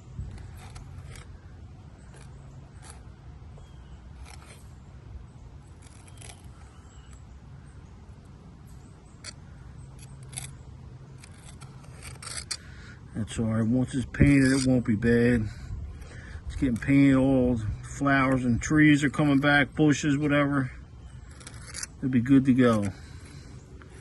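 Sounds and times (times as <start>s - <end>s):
steady low hum: 0.0s - 24.0s
light clicks and scrapes: 0.3s - 4.8s, 5.8s - 7.2s, 8.7s - 12.8s, 14.0s - 14.9s, 21.0s - 24.0s.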